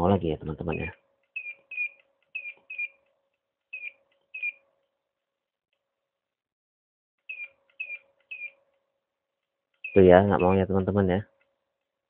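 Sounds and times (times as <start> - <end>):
studio flash firing chirp: 0.7 - 3.0, 3.7 - 4.6, 7.3 - 8.6, 9.8 - 10.7.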